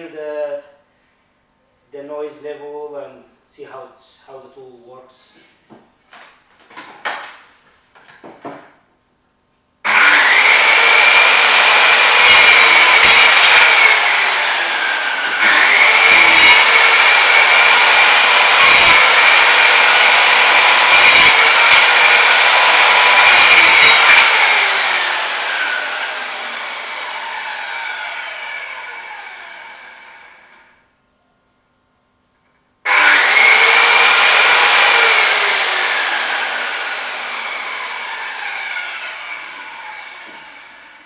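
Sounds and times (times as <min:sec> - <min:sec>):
saw blade cutting wood: 0:09.9 - 0:30.6, 0:32.9 - 0:41.0
circular saw whining: 0:09.9 - 0:30.8, 0:32.9 - 0:41.0.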